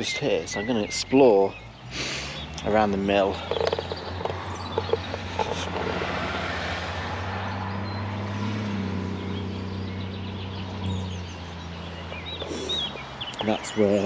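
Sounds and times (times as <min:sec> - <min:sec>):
vehicle passing by: 0:01.0 - 0:14.0.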